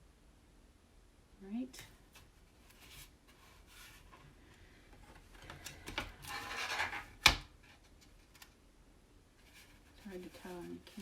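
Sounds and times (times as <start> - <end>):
hands rubbing transfer rustle: 2.0 - 4.4, 9.4 - 11.0.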